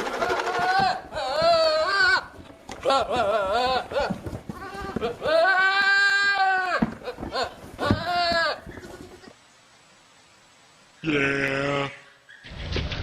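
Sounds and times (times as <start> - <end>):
animal bleating: 0.0 - 9.4.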